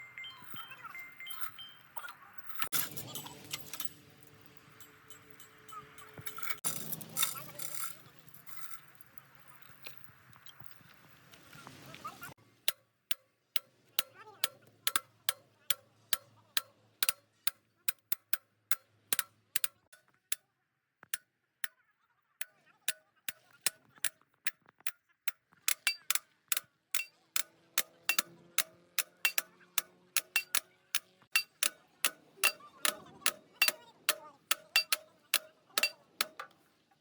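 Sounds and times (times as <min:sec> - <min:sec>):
sharp ticking clicks: 0:12.6 - 0:20.4, 0:22.8 - 0:36.6.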